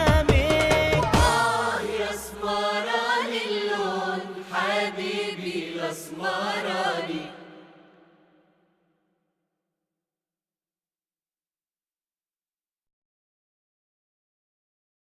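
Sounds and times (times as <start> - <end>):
pop song drums: 0.0 - 2.6
person singing: 0.0 - 5.6.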